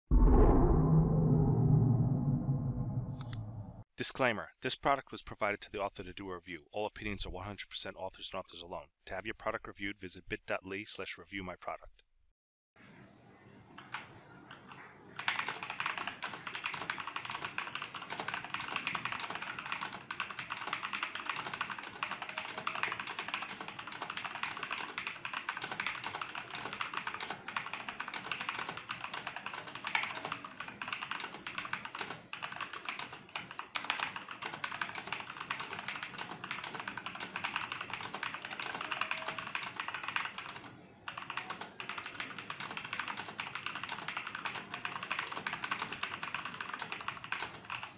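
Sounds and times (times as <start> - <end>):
mechanical keyboard typing: 15.2 - 47.9.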